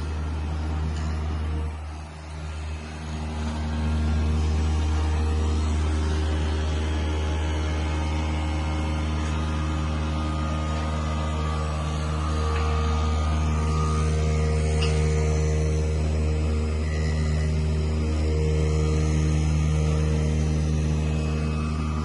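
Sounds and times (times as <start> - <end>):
cutting machine motor hum: 0.0 - 22.0.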